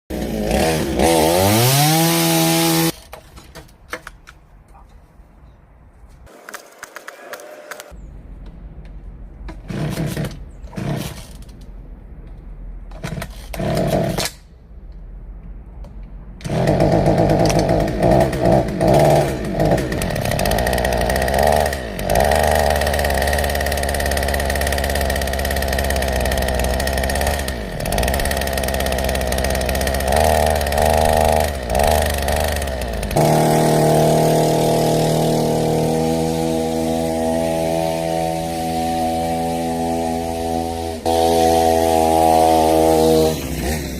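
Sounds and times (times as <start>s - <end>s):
two-stroke engine revving: 0.1s - 3.0s, 16.4s - 43.9s.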